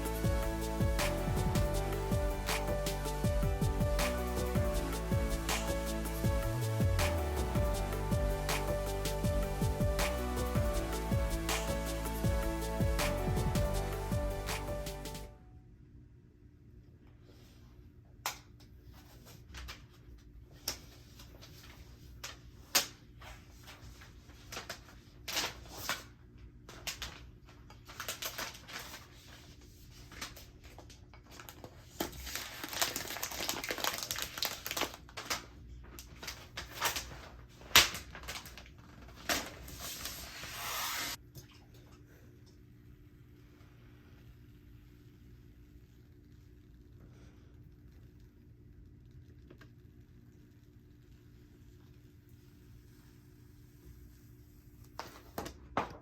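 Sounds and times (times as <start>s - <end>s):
packaging rustling: 26.8s - 40.8s.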